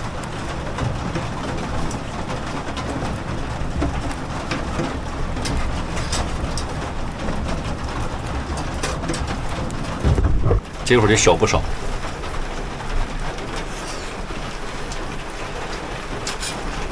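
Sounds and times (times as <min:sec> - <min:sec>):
heavy rain drumming on metal: 0:00.0 - 0:16.9.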